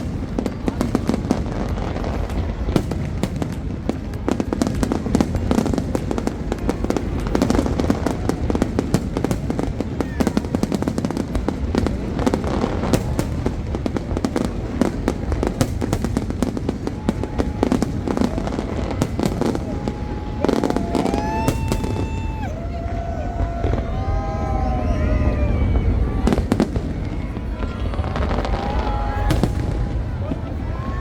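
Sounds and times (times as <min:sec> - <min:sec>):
fireworks bangs and crackling: 0:00.0 - 0:31.0.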